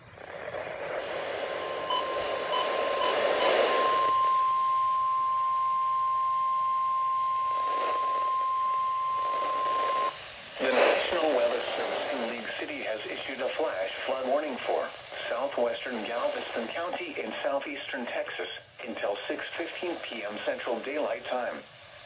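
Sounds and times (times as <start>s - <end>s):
radio hiss: 0.0s - 22.0s
high alarm beep: 1.8s - 10.2s.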